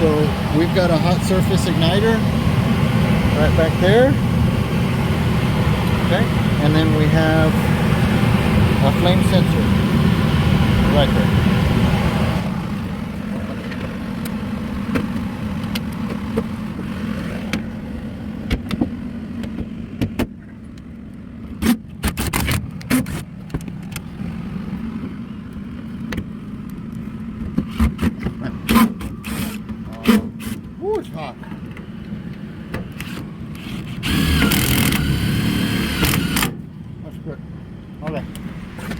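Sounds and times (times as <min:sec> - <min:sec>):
air conditioner humming: 0:00.0 - 0:20.0.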